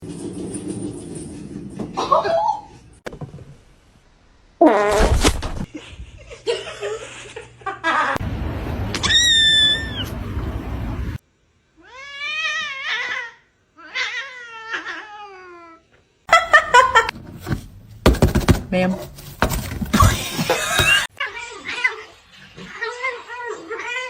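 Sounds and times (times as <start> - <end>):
cat meowing: 9.0 - 10.3.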